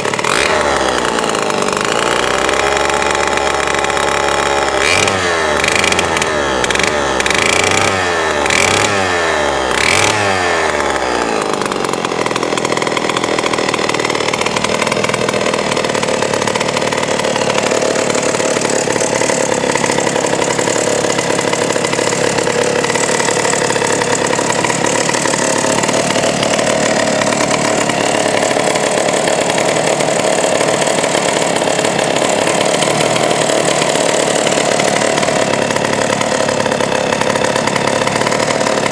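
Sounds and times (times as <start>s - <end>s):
chainsaw revving: 0.0s - 38.9s.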